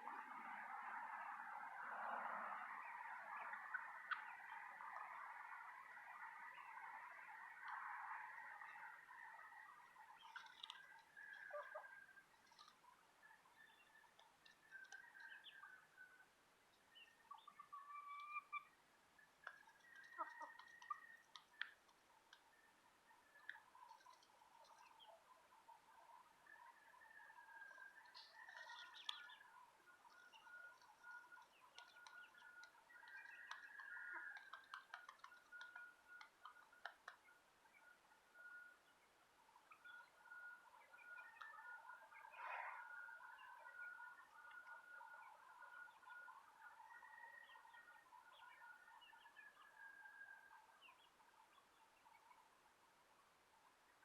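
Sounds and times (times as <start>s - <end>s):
chickens calling softly: 2.6s - 38.6s
small sharp ticks: 6.6s - 15.7s, 19.4s - 22.6s, 23.3s - 25.2s, 27.7s - 37.4s
chickens soft high calls: 8.5s - 16.0s, 17.2s - 18.8s, 19.4s - 22.4s.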